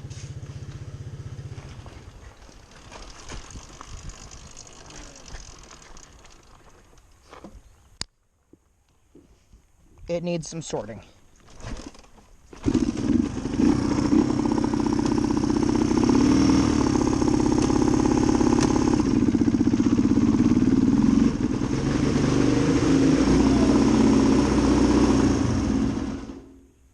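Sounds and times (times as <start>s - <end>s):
motorcycle engine revving: 0.0s - 6.1s, 12.6s - 26.6s.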